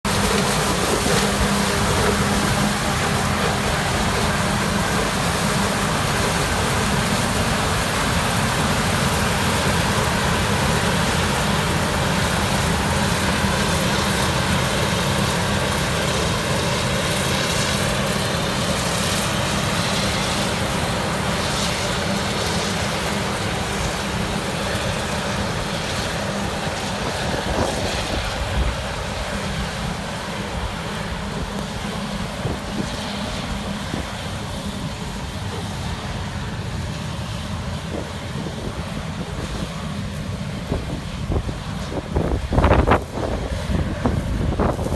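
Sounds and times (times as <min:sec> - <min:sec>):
farm machinery engines running: 0:00.0 - 0:44.9.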